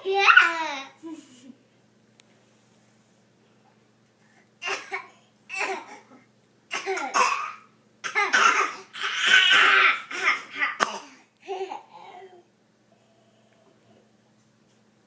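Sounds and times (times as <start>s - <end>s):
person coughing: 4.6s - 6.2s, 6.8s - 11.2s.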